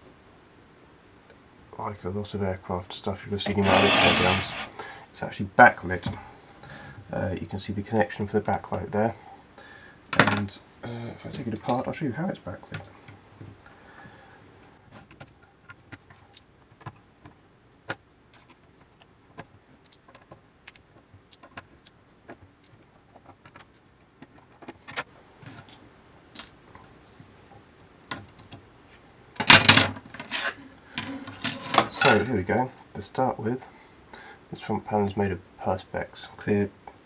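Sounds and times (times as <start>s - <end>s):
clatter of parts: 29.4s - 30.3s, 31.0s - 32.3s.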